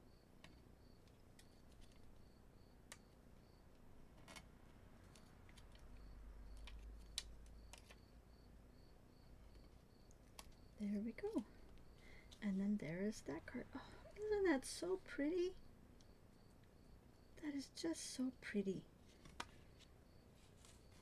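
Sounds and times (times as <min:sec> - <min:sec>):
small clicks and taps: 0:02.8 - 0:03.1, 0:03.7 - 0:08.1, 0:19.1 - 0:19.9.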